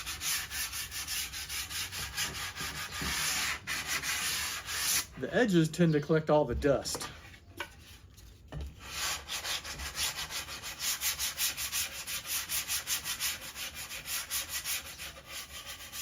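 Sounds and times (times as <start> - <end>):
sandpaper rubbing wood: 0.0 - 5.2, 8.8 - 16.0.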